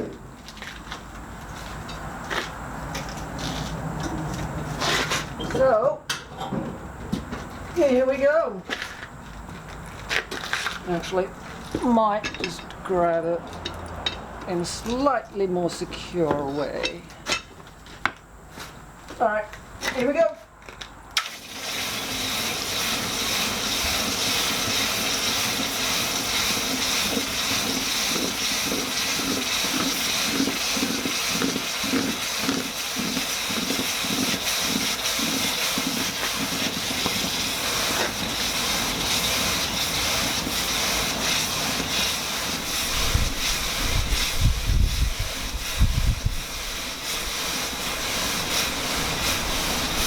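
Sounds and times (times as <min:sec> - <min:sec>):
hissing boiling water and steam: 0:21.2 - 0:50.0.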